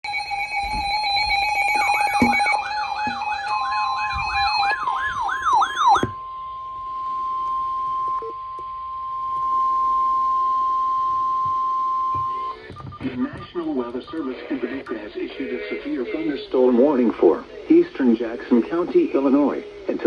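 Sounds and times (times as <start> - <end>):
electronic beeping tones: 0.0 - 6.2, 7.1 - 15.5
steady warning alarm tone: 0.0 - 17.0
warbling tone: 0.1 - 6.0.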